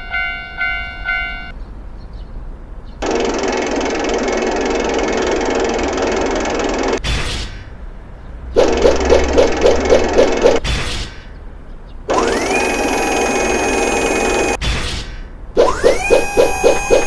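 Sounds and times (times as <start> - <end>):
train passing: 8.4 - 10.6.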